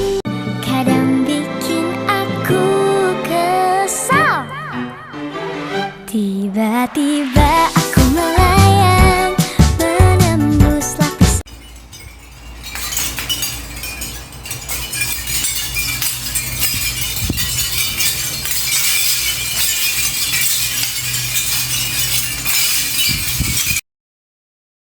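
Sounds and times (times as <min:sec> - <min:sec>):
shells clinking together: 0:11.5 - 0:23.8.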